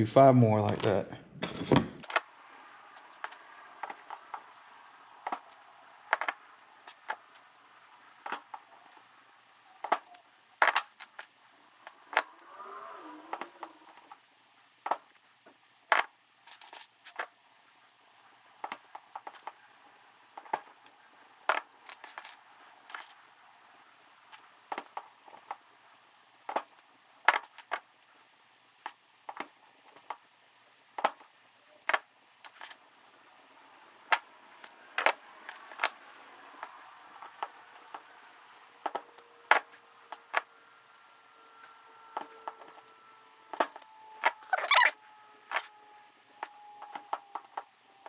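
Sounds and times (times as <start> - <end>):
hand tools clicking and snapping: 2.0 - 32.8, 34.1 - 38.2, 38.8 - 48.0
small metal parts clinking: 2.0 - 32.8, 33.4 - 48.0
short wavering squeak: 44.1 - 46.0.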